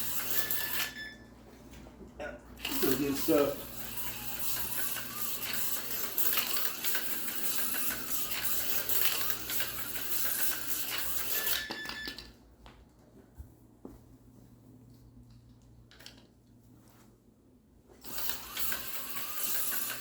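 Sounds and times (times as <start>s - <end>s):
slot car buzzing clatter: 0.0s - 1.0s, 2.7s - 12.2s, 18.1s - 20.0s.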